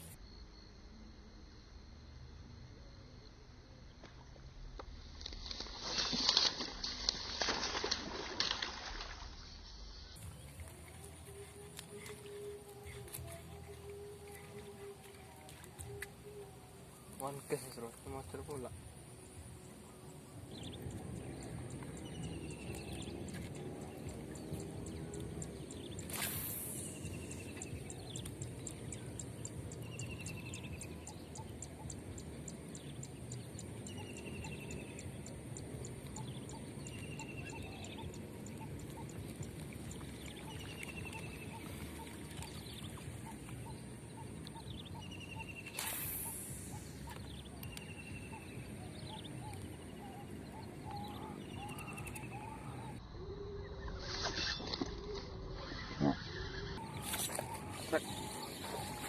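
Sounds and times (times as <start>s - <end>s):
insects ticking: 3.9s - 52.8s
brief swish: 26.0s - 27.1s, 45.6s - 47.3s.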